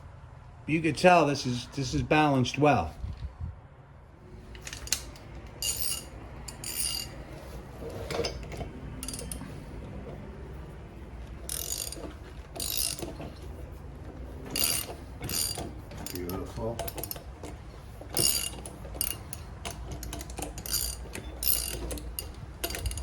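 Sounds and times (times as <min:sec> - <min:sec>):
ratchet wrench clicking: 0:04.5 - 0:13.8, 0:14.4 - 0:23.0.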